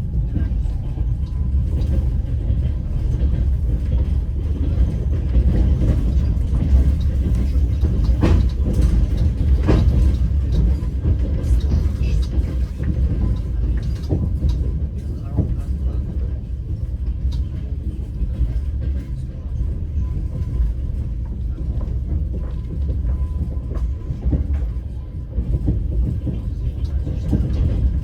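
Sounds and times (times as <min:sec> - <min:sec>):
train wheels rumbling on rails: 0:00.0 - 0:28.0
wheels clacking over rail joint: 0:00.3 - 0:14.8.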